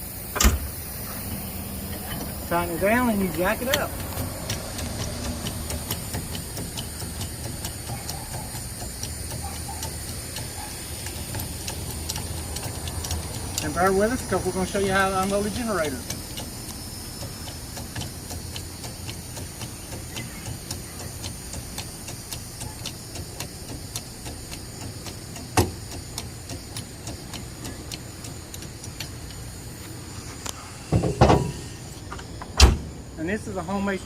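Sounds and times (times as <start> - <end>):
steady background hiss: 0.0 - 6.8, 23.1 - 34.0.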